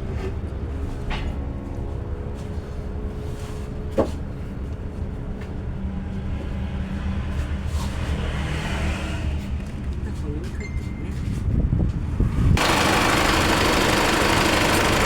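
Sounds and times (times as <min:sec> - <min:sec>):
diesel engine running: 0:12.6 - 0:15.0.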